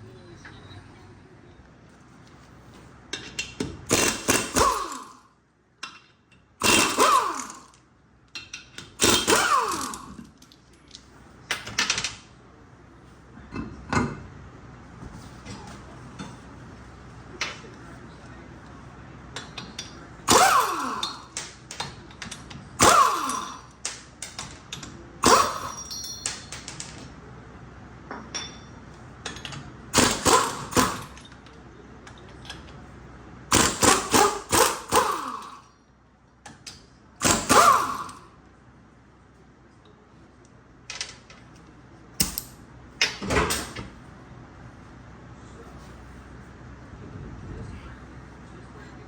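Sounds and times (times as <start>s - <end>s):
metal tools knocking and clanking: 8.3s - 9.4s, 19.4s - 20.0s, 24.2s - 27.0s, 28.1s - 29.7s, 42.2s - 43.9s.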